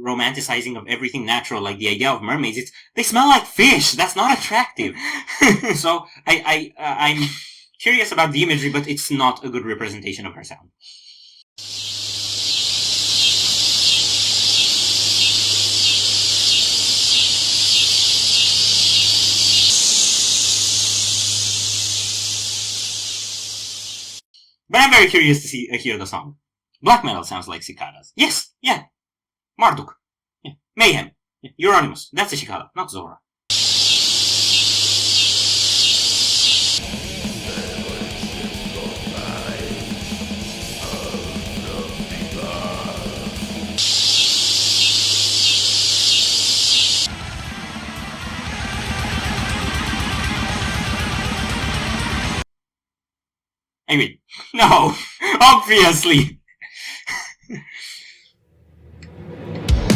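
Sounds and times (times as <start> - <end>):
cicadas buzzing: 11.6 - 24.2, 33.5 - 47.1.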